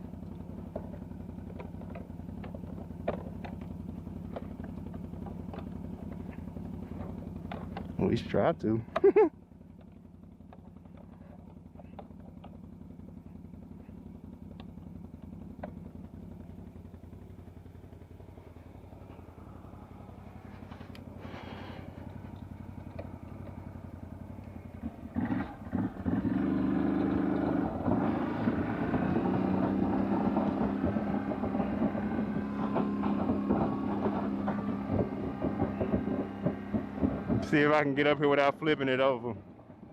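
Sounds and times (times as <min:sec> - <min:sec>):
quad engine running: 0:00.0 - 0:39.9.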